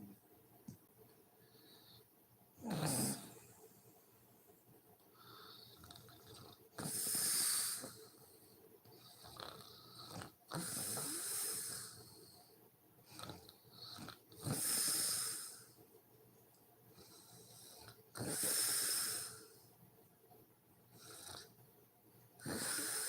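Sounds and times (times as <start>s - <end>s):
quiet breathing: 1.0s - 23.0s
woman snoring: 2.6s - 3.4s, 22.4s - 23.0s.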